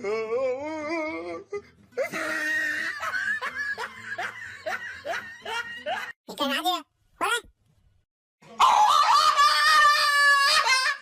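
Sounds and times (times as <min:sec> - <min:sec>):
person laughing: 0:02.0 - 0:06.2.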